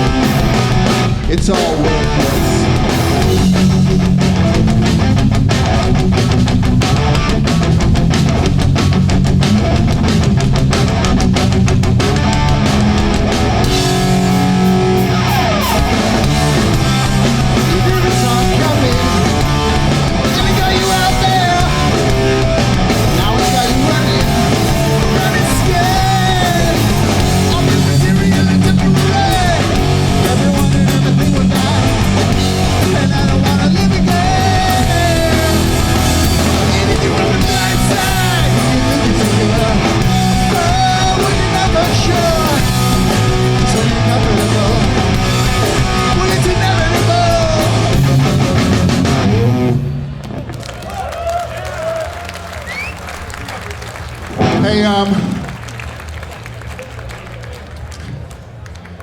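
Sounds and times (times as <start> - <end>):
distorted electric guitars: 0.0 - 50.6, 54.0 - 55.7
bass guitar: 0.0 - 57.2
drums: 0.0 - 59.0
person singing: 1.2 - 2.8, 17.4 - 48.8.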